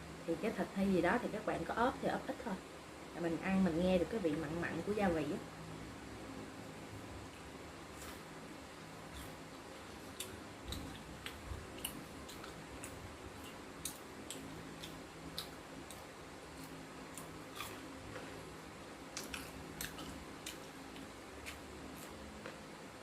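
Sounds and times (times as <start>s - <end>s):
chewing crispy fried fish: 7.2s - 8.4s, 9.0s - 22.7s.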